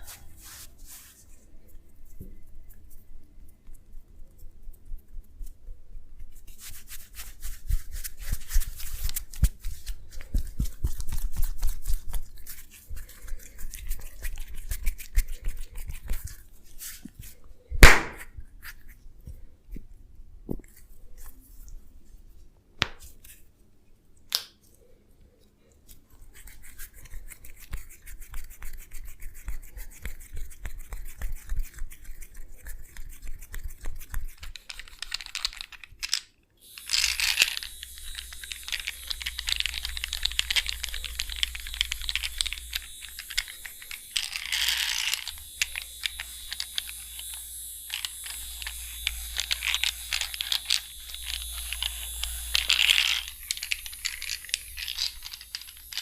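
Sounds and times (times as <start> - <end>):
fingers rubbing and scratching skin: 0.0 - 1.7, 4.2 - 17.5, 26.0 - 35.6, 36.7 - 56.0.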